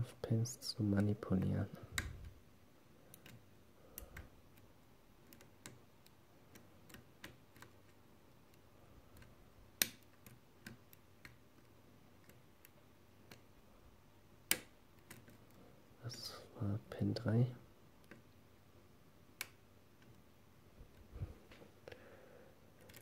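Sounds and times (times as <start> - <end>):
lock pick clicks and taps: 3.1 - 13.5, 14.4 - 15.6, 19.4 - 20.2.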